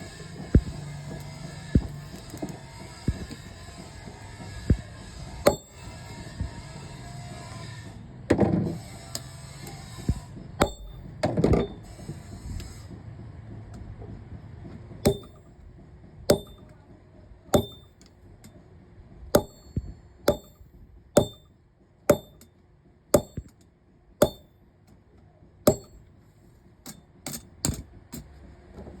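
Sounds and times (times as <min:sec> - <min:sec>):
hammer striking steel on anvil: 0:05.5 - 0:05.9, 0:10.6 - 0:11.8, 0:15.1 - 0:15.5, 0:16.3 - 0:16.7, 0:17.6 - 0:18.0, 0:19.4 - 0:21.5, 0:22.1 - 0:22.5, 0:23.2 - 0:23.5, 0:24.2 - 0:24.5, 0:25.7 - 0:26.0.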